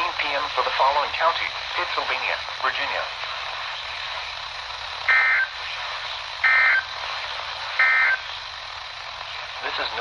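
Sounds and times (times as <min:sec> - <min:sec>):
radio static hiss: 0:00.0 - 0:10.0
warbling two-tone data bursts: 0:05.1 - 0:05.6, 0:06.4 - 0:06.9, 0:07.8 - 0:08.3.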